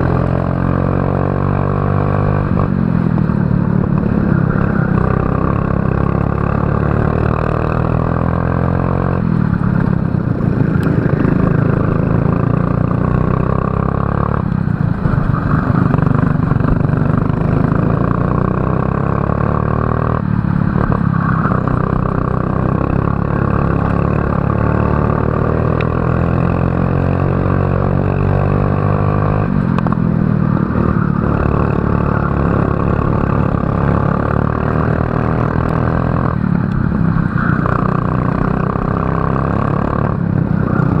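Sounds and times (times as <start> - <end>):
racing kart engine revving: 0.0 - 41.0.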